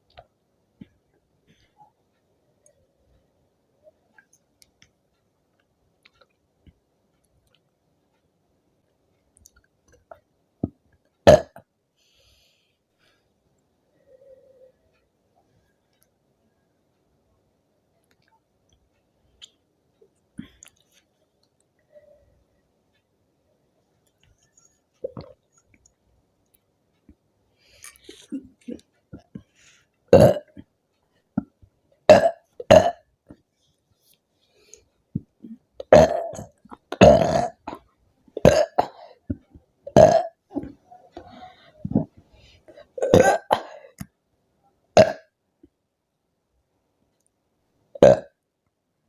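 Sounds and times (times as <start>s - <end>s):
woman burping: 11.3s - 11.6s, 30.1s - 30.6s, 32.1s - 33.0s, 35.4s - 37.8s, 38.4s - 39.1s, 39.8s - 40.7s, 43.0s - 44.0s, 45.0s - 45.3s, 48.0s - 48.4s.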